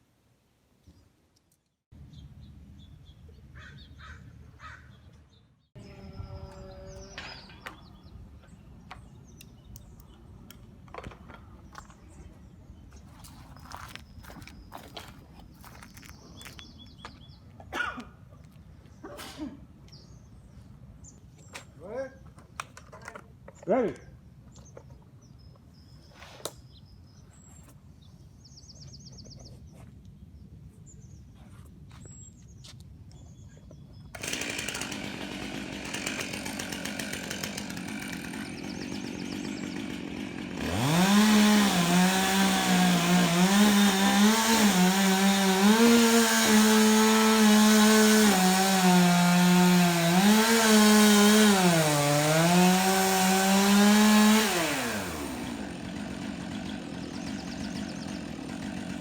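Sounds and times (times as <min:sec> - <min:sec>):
chainsaw cutting wood: 0:05.8 - 0:08.1, 0:34.1 - 0:59.0.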